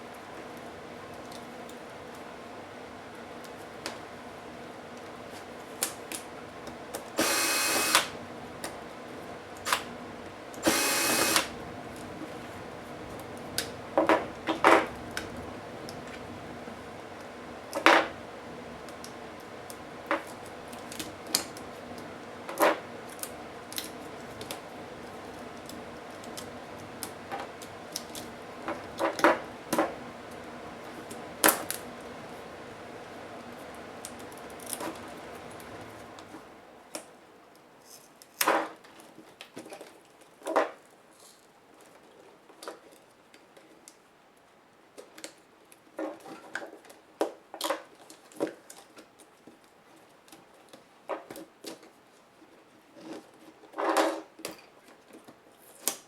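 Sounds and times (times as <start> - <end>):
electric screwdriver whirring: 7.2 - 8.2, 10.6 - 11.6.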